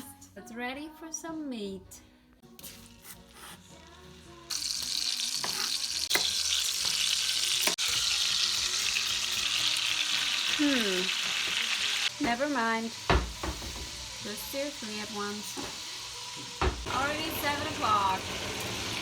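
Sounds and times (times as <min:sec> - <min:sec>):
meat sizzling in a pan: 0:02.6 - 0:19.0
utensils clicking against pan: 0:05.4 - 0:08.0.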